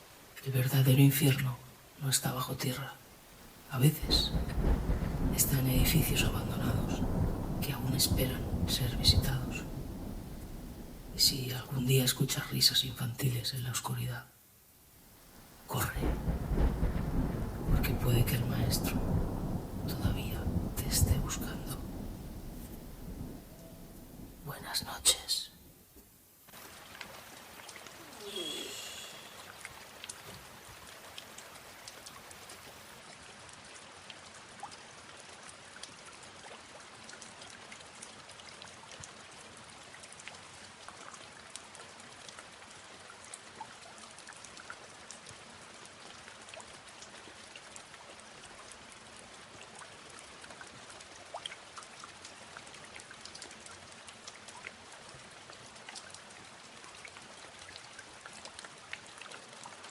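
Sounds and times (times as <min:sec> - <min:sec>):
steady rain falling: 0:00.0 - 0:59.9.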